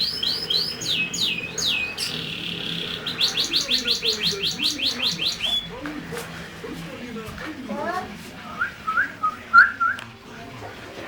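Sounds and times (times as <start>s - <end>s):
lovebird chirping: 0.0s - 5.8s.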